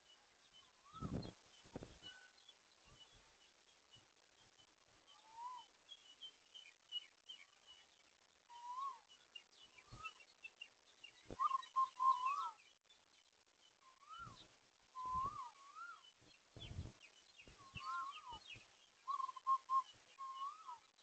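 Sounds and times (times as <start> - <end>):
birds chirping: 0.0 - 21.0
whistled bird notes: 0.6 - 1.4, 5.1 - 7.8, 8.5 - 10.3, 11.1 - 12.6, 13.8 - 21.0
low thuds: 16.6 - 17.8.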